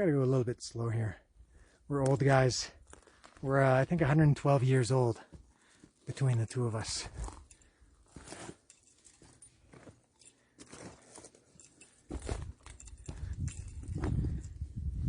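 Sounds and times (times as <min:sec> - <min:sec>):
footsteps on trail: 0:12.1 - 0:14.4
low rumble on microphone: 0:12.4 - 0:15.0.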